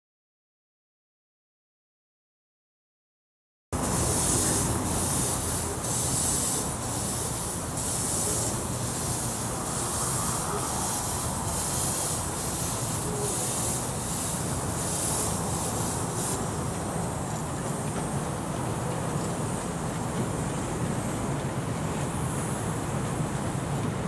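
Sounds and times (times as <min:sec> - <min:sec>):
steam hiss: 0:03.8 - 0:24.0
steam locomotive exhaust chuffs: 0:03.8 - 0:24.0
wheels rumbling on track: 0:03.8 - 0:24.0.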